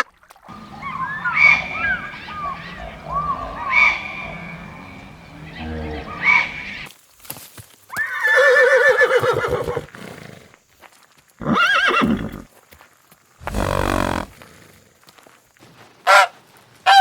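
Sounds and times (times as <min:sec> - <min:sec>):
horse whinnying: 0:13.4 - 0:14.4.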